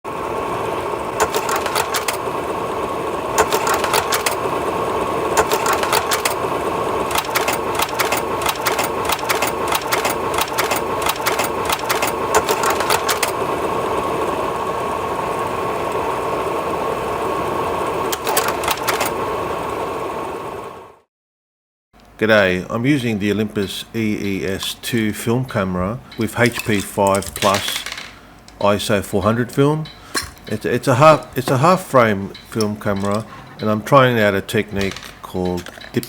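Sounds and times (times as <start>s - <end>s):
small machine whirring: 0.1s - 21.1s
rapid clicking: 0.5s - 14.4s, 18.0s - 19.3s.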